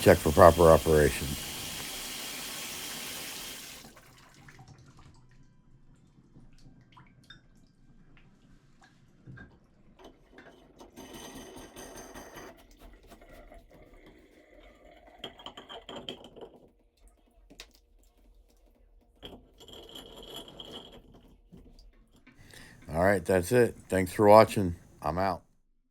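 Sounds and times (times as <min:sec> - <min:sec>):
water dripping: 0:00.0 - 0:03.9
water running from faucet: 0:00.0 - 0:04.3.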